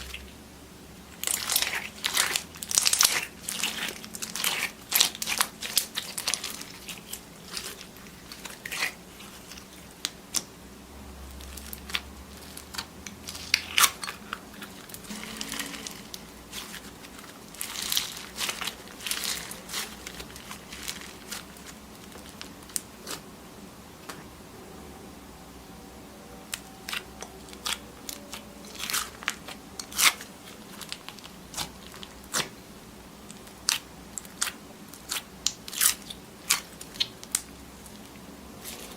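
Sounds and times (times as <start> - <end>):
slime crunching and clicking: 26.5 - 32.5, 33.2 - 38.9.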